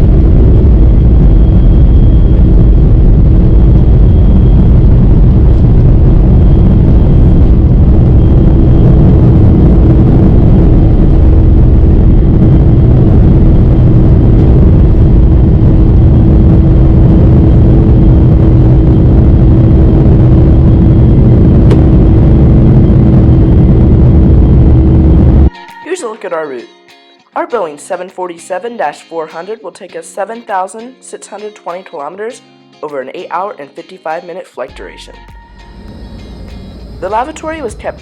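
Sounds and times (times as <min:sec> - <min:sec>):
aircraft cabin engine rumble: 0:00.0 - 0:25.5
steady hum: 0:00.0 - 0:25.5, 0:35.1 - 0:38.0.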